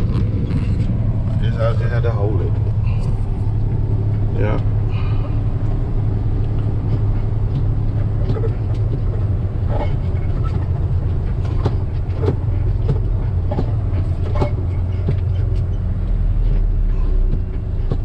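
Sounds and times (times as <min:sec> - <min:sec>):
diesel truck engine running: 0:00.0 - 0:18.0.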